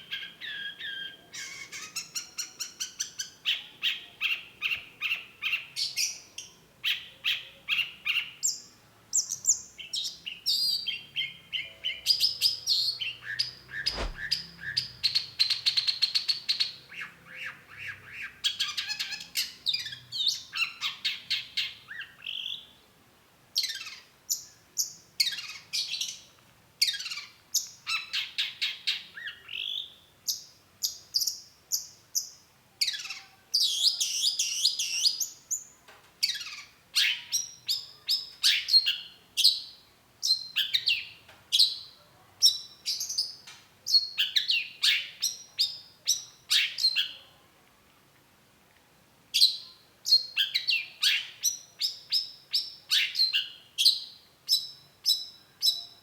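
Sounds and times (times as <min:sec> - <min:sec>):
bird singing sharp notes: 0:13.8 - 0:14.8.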